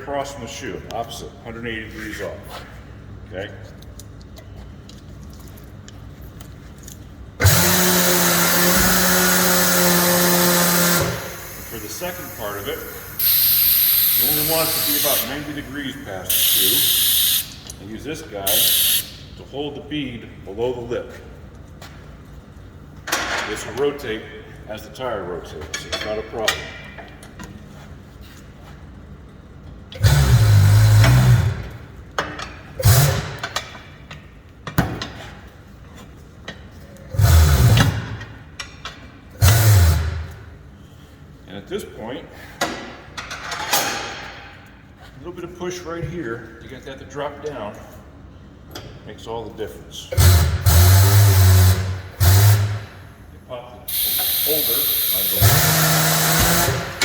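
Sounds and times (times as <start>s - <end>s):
turntable motor running: 9.0s - 17.6s.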